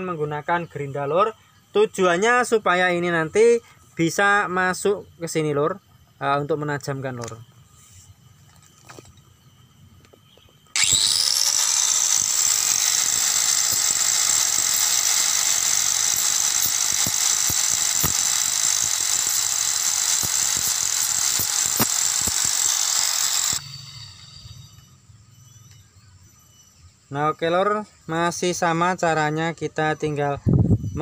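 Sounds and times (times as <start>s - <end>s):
angle grinder running: 10.7s - 24.9s
metal tool ground on grinder: 10.8s - 24.9s.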